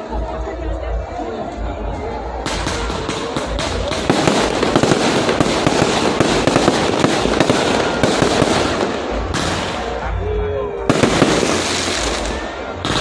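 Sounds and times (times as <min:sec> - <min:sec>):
fireworks crackling bangs: 0:02.5 - 0:10.2, 0:10.9 - 0:13.0.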